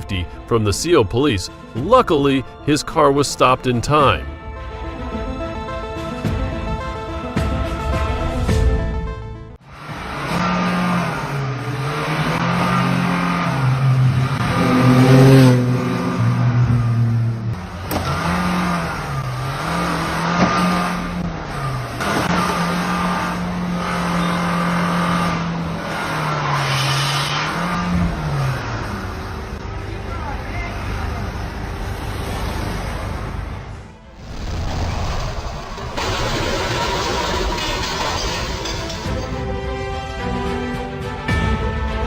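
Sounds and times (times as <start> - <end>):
vehicle engine droning: 9.6 - 34.8
road rushing noise: 9.6 - 40.7.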